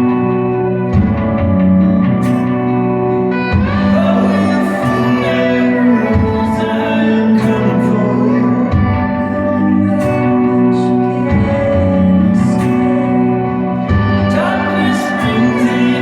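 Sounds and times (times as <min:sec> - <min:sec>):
bass line: 0:00.0 - 0:16.0
guitar chords: 0:00.0 - 0:16.0.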